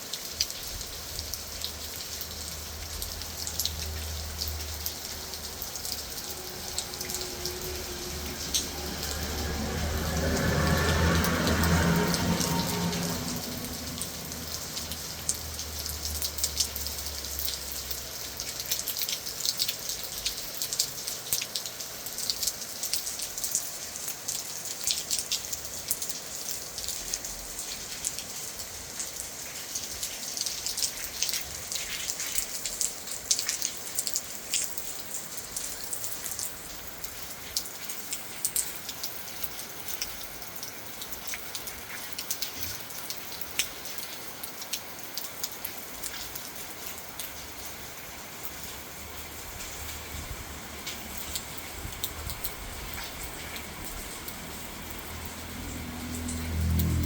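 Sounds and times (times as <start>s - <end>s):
steady rain falling: 0.0s - 57.0s
low rumble: 5.5s - 15.9s.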